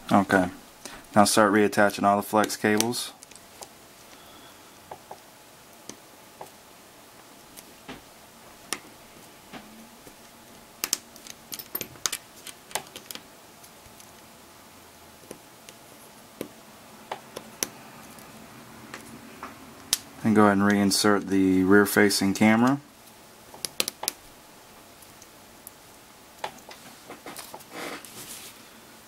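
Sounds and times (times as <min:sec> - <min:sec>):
small sharp clicks and taps: 0:23.5 - 0:24.2.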